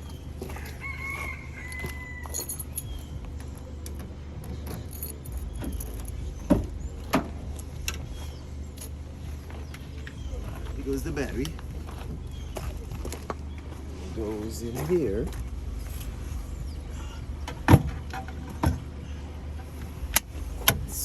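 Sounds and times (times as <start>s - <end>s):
steady low hum: 0.0s - 21.0s
parts clicking and knocking: 1.7s - 8.1s.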